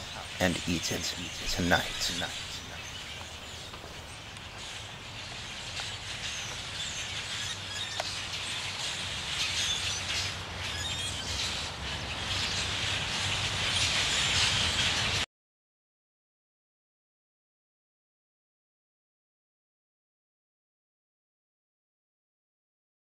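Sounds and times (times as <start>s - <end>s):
birds chirping: 0.0s - 15.2s
outdoor hiss and low rumble: 0.0s - 15.2s.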